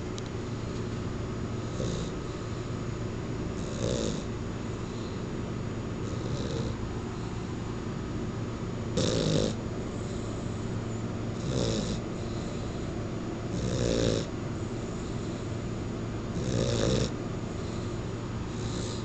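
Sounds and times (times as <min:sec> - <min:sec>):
dog snoring loudly: 0:01.6 - 0:02.6, 0:03.5 - 0:05.2, 0:06.0 - 0:07.4, 0:08.9 - 0:10.5, 0:11.3 - 0:12.9, 0:13.5 - 0:15.5, 0:16.3 - 0:17.9, 0:18.5 - 0:19.0.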